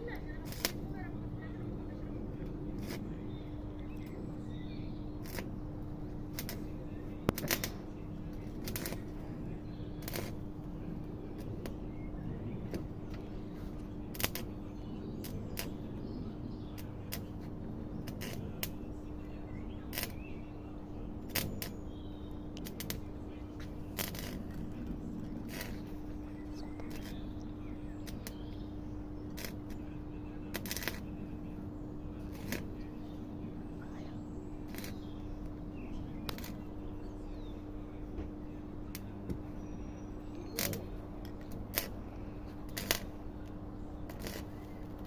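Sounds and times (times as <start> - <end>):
steady low hum: 0.0 - 45.0
sharp clicks and light knocks: 7.3 - 7.8.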